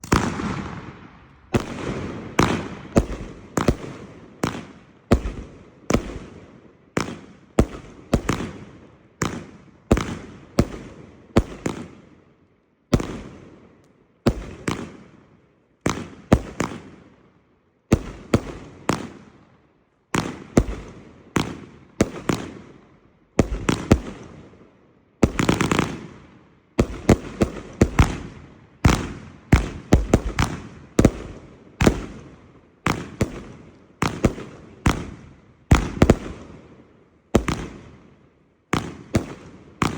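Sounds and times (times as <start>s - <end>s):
firework bangs: 0.0s - 6.3s, 32.9s - 36.7s, 37.4s - 38.0s, 38.7s - 39.9s.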